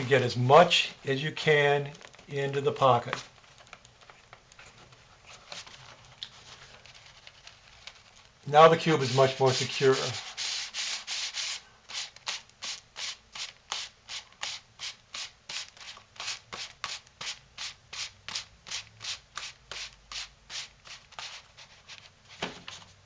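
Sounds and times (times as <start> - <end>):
paper rubbing against paper: 8.6 - 22.9.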